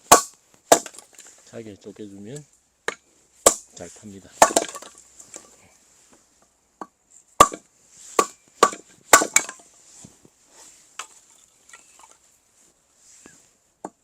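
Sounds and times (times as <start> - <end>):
axe chopping firewood: 0.0 - 1.2, 2.8 - 3.8, 4.4 - 5.0, 6.8 - 9.6.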